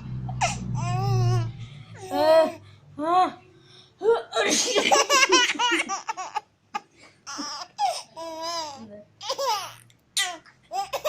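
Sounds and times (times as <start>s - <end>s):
baby laughing and squealing: 7.3s - 11.0s.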